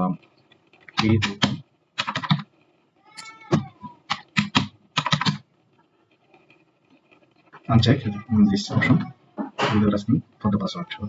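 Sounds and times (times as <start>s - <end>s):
laptop keyboard typing: 0.7s - 2.6s, 3.2s - 5.5s.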